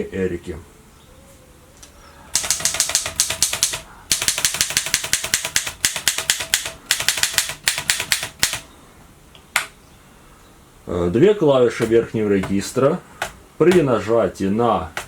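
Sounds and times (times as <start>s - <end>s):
typewriter typing: 2.3s - 8.7s.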